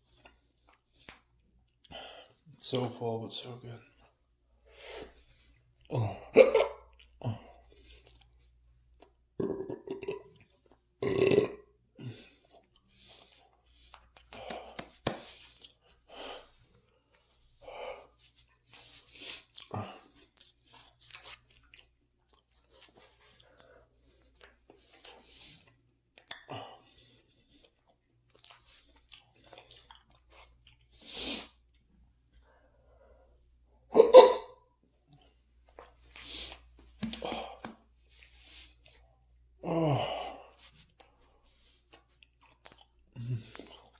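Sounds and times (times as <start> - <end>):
man chewing and crunching food: 0.0 - 2.5, 3.9 - 34.1, 34.8 - 43.9
loud burps: 5.9 - 7.4, 9.4 - 10.4, 11.0 - 11.8, 33.9 - 34.6.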